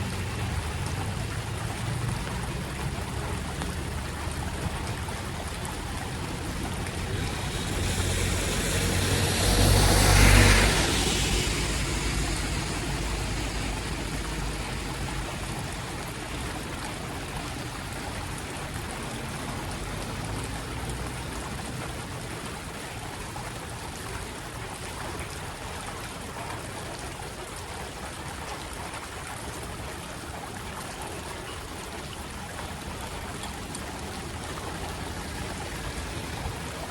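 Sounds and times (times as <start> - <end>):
floodwater running: 0.0 - 36.9
rain: 0.0 - 36.9
vehicle driving through water: 0.0 - 36.9.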